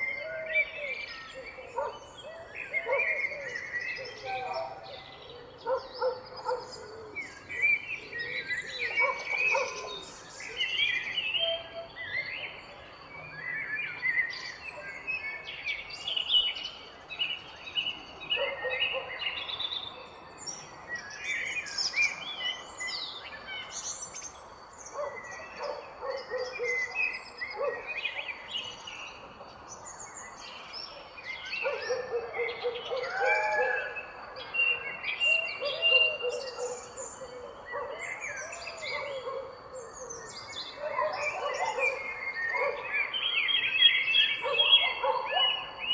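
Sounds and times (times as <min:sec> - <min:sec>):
birds chirping and singing: 0:00.0 - 0:12.7, 0:13.4 - 0:45.9
lower repeated bird calls: 0:31.5 - 0:45.9.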